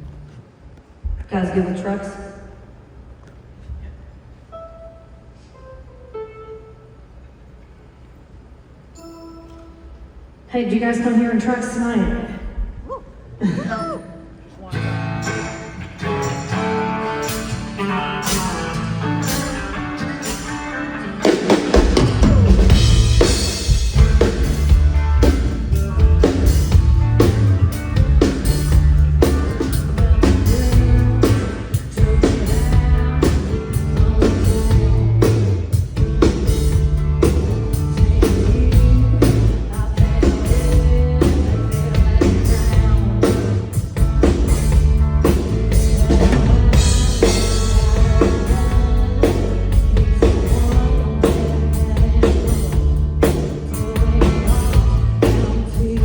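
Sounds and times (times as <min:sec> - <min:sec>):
heavy bass: 0:14.7 - 0:56.0
live band playing pop-country: 0:14.8 - 0:56.0
drum-kit beat: 0:21.2 - 0:56.0.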